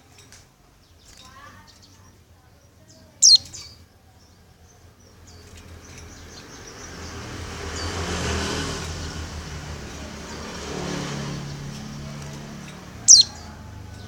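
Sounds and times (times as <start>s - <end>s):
bird chirping: 0.0s - 14.0s
vehicle passing by: 5.2s - 14.0s.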